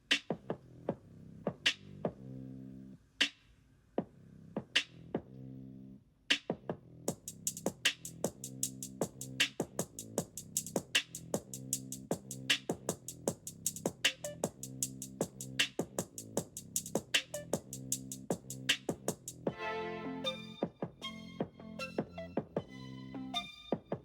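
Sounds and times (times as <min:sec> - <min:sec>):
fast hi-hat ticks: 0:07.1 - 0:19.5
electronic beat: 0:07.1 - 0:19.7, 0:20.4 - 0:24.0
low synth chords: 0:19.6 - 0:23.5.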